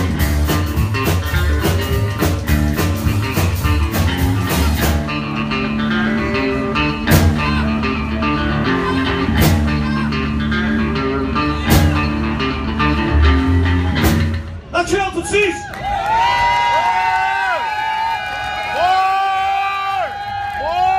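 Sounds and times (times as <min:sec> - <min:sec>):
sharp drum accent: 0:00.0 - 0:05.2
electric guitar: 0:00.0 - 0:14.7
bass guitar: 0:00.0 - 0:15.2.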